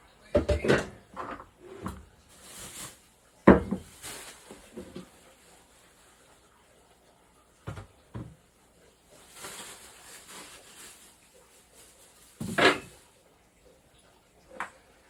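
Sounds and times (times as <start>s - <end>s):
faint rustling: 1.0s - 3.1s, 3.8s - 6.3s, 9.1s - 13.0s.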